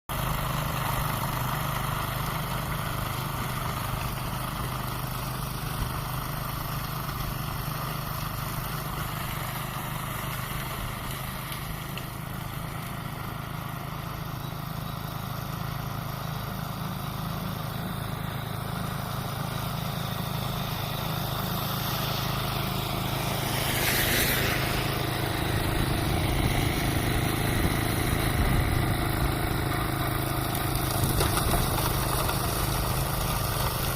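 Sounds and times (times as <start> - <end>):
engine running: 0.1 - 33.9
brief hissing rush: 23.1 - 25.2.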